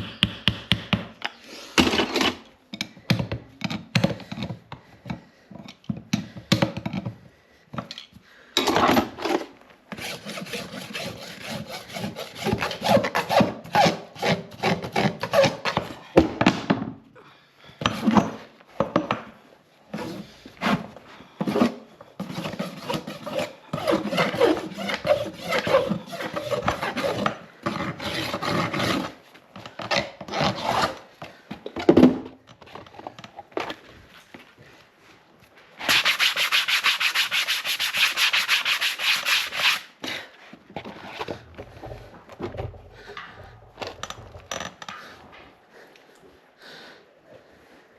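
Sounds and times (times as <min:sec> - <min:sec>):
rasp filing a hoof: 0:09.9 - 0:16.0, 0:17.8 - 0:18.5, 0:19.9 - 0:29.2, 0:35.8 - 0:40.0.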